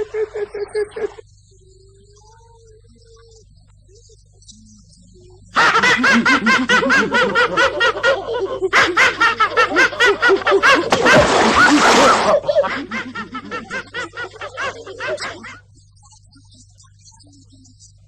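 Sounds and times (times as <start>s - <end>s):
cartoon hyenas cackling: 0.0s - 1.2s, 5.5s - 15.7s.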